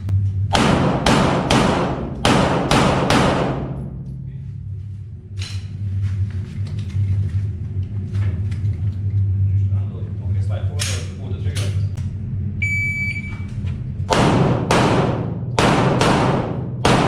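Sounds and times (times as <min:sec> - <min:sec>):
steady low hum: 0:00.0 - 0:17.0
pistol shots with echo: 0:00.5 - 0:03.8, 0:14.1 - 0:17.0.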